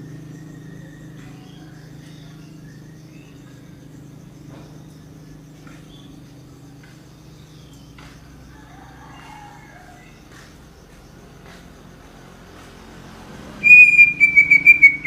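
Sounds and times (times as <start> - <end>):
birds chirping: 0.0 - 15.0
steady low hum: 0.0 - 15.0
bird warbling: 13.6 - 15.0.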